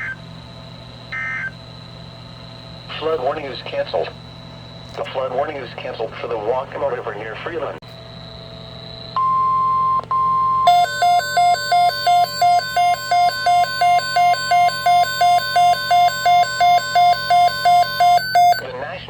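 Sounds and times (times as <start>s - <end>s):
electronic alarm beeping: 9.2s - 18.7s
high warning tone: 10.6s - 18.8s.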